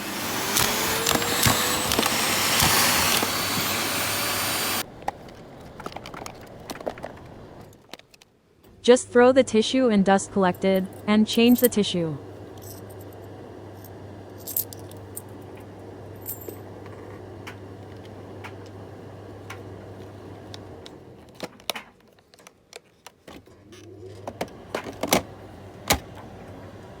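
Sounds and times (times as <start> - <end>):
plastic clicks and rattles: 5.0 - 8.3, 21.3 - 23.4.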